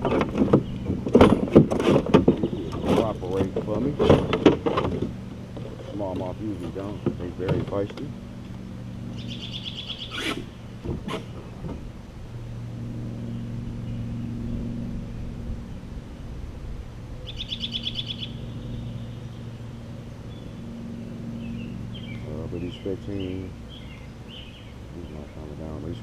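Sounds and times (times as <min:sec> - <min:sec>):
steady low hum: 0:00.0 - 0:26.0
bird trilling call: 0:09.1 - 0:11.5, 0:17.2 - 0:25.5.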